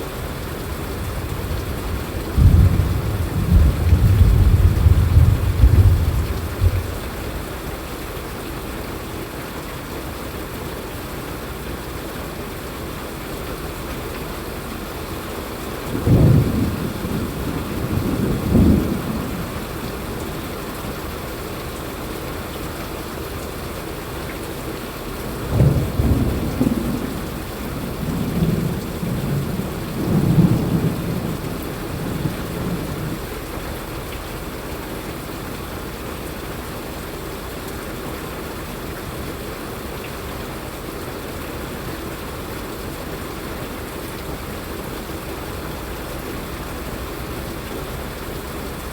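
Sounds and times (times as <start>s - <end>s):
steady rain falling: 0.0s - 48.9s
low thunder rumbling: 0.3s - 7.5s, 15.8s - 20.5s, 25.3s - 33.5s.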